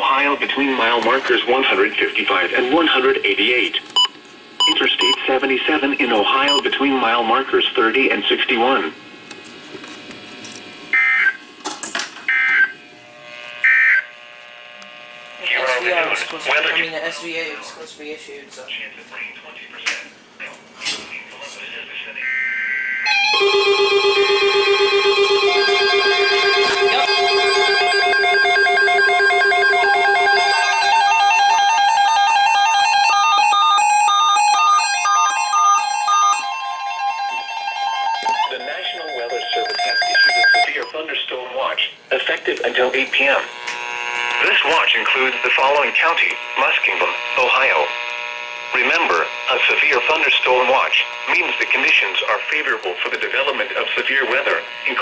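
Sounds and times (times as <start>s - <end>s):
radio hiss: 0.0s - 9.0s, 14.9s - 22.4s, 40.7s - 55.0s
repeated high beeps: 4.0s - 5.3s, 6.5s - 6.8s
warbling two-tone alert: 22.3s - 40.9s.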